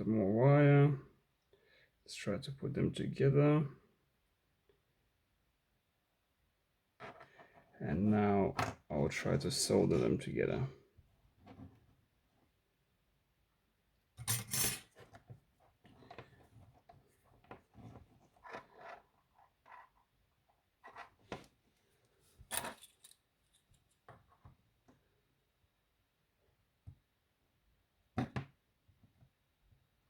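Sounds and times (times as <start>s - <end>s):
small tools clicking and scraping: 22.5s - 24.1s.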